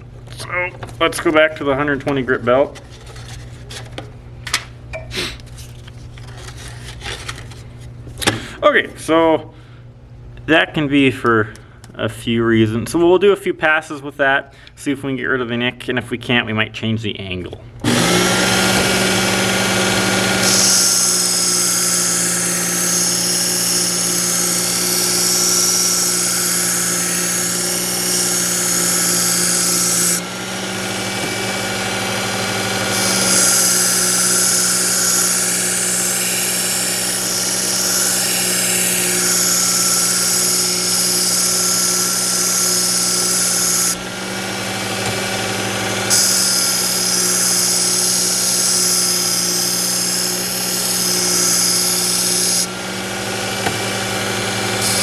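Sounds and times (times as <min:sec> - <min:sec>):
belt sharpener motor humming: 0:17.8 - 0:55.0.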